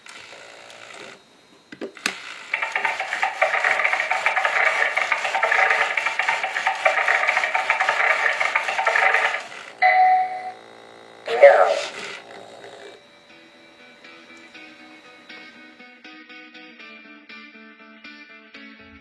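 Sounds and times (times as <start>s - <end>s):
rasping rattle from speaker: 2.0s - 13.0s.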